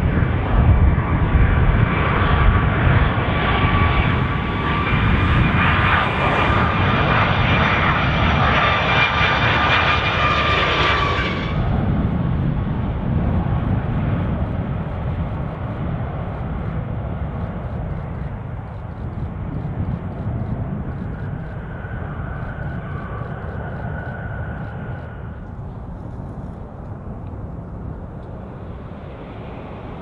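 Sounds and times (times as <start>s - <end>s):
jet engines rumbling: 0.0s - 30.0s
faint thin whine: 14.8s - 28.3s.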